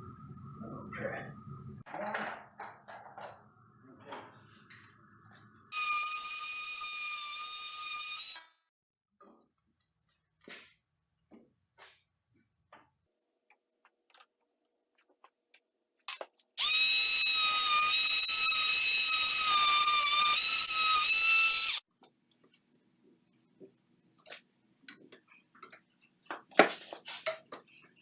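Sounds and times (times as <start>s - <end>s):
power tool motor whining: 16.6s - 21.8s.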